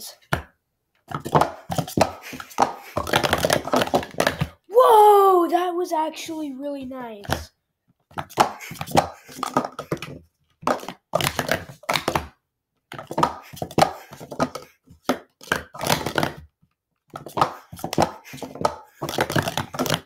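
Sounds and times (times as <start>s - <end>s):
plastic cups clacking: 1.0s - 4.6s, 7.2s - 7.4s, 8.1s - 12.3s, 12.9s - 16.5s, 17.1s - 20.0s.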